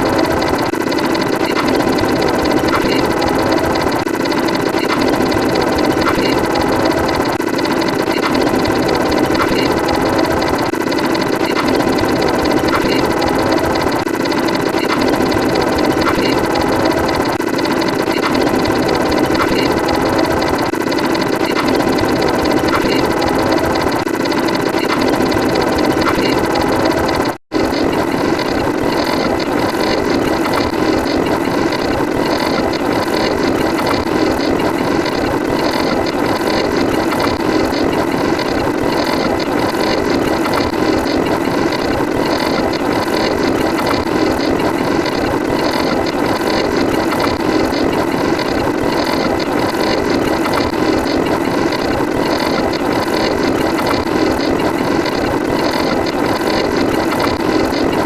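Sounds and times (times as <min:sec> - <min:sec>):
mechanical clattering: 0:00.0 - 0:58.0.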